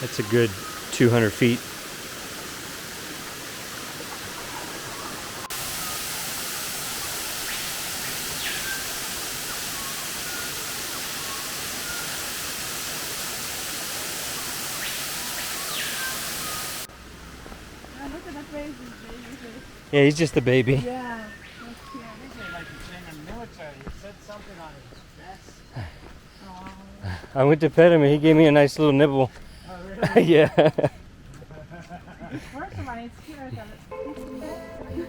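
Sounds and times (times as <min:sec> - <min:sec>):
waterfall pouring: 0:00.0 - 0:16.9.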